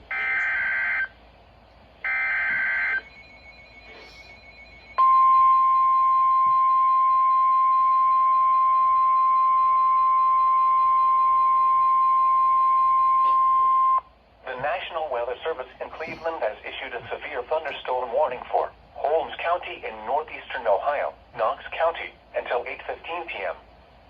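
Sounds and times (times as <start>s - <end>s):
steady warning alarm tone: 0.1s - 1.2s, 2.0s - 14.1s.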